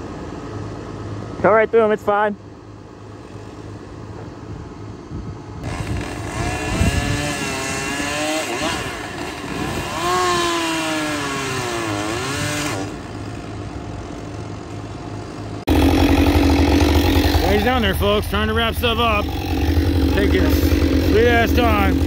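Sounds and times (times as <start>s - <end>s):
chainsaw cutting wood: 5.6s - 13.4s, 15.7s - 17.8s, 19.1s - 22.0s
loud engine: 5.6s - 22.0s.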